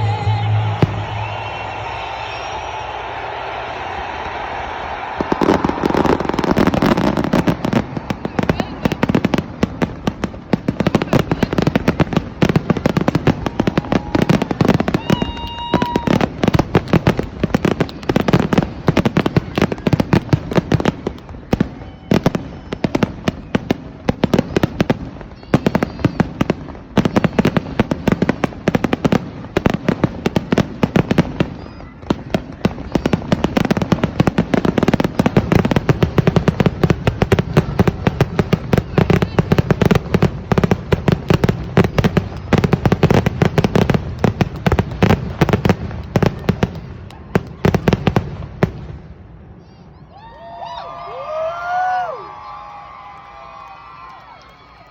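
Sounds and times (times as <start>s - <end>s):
firework whistle: 0.0s - 9.0s, 13.4s - 16.3s
fireworks bangs and crackles: 0.0s - 49.8s.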